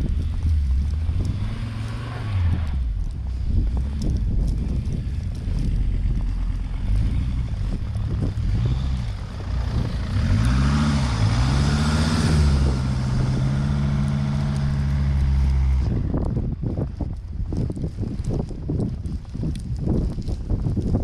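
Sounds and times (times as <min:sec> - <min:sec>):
vehicle engine revving: 0:00.0 - 0:16.8
tyre road noise hiss: 0:00.0 - 0:21.0.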